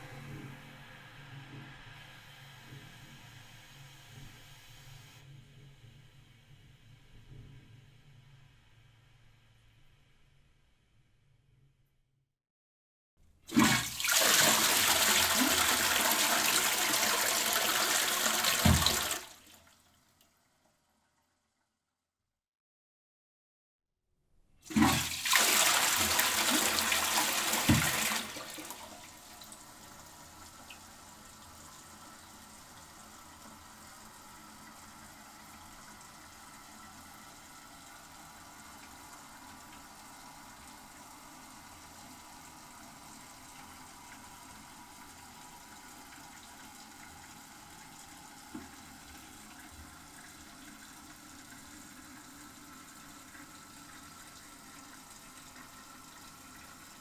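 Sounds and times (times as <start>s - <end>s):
cistern refilling: 13.5s - 19.5s, 24.7s - 40.7s
toilet flushing: 13.5s - 19.9s, 24.6s - 57.0s.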